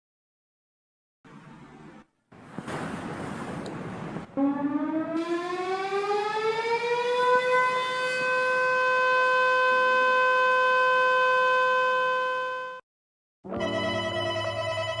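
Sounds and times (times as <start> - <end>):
siren winding up: 4.4 - 12.8.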